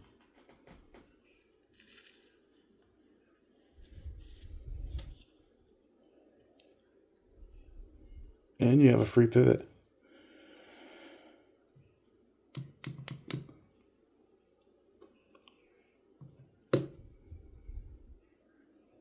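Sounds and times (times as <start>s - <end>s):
folding knife clicks: 12.6s - 13.6s.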